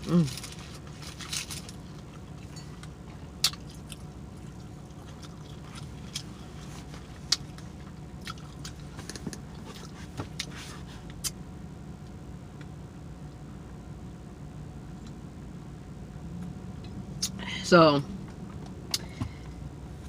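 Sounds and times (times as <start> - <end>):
steady low hum: 0.0 - 20.0
chewing and lip smacking: 1.9 - 6.4, 7.1 - 10.5.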